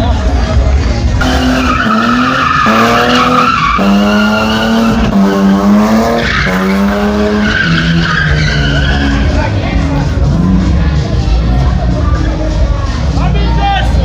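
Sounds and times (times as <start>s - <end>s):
tyres screeching: 1.2s - 9.6s
car engine at high revs: 1.2s - 12.2s.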